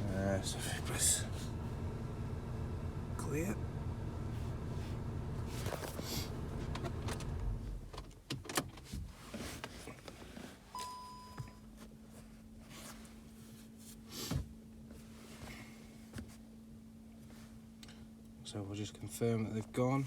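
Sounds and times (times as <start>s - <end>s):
low steady hum: 0.0s - 8.0s.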